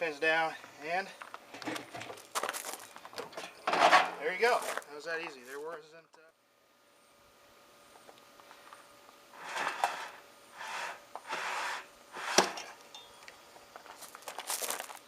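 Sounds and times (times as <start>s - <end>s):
rubbing and scraping of parts: 1.4s - 5.7s, 9.4s - 12.8s.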